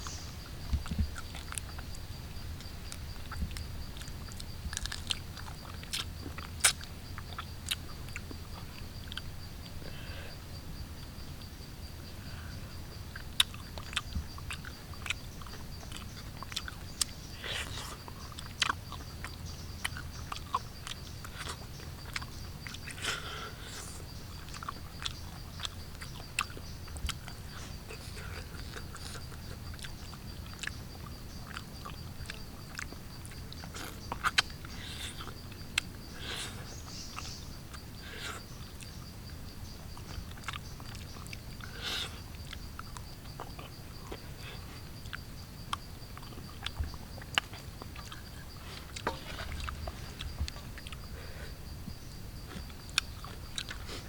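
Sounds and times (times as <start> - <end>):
person chewing food: 0.0 - 1.9, 2.6 - 9.3, 13.2 - 39.0, 39.8 - 51.6, 52.4 - 54.0
mouth clicks and smacks: 13.2 - 39.0, 39.9 - 51.2, 52.5 - 54.0.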